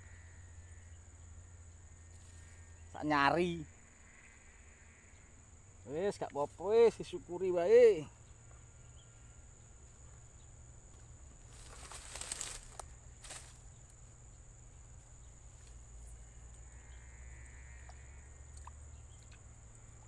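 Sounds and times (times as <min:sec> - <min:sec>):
high insect drone: 0:00.0 - 0:20.0
brief rustle: 0:11.6 - 0:13.6.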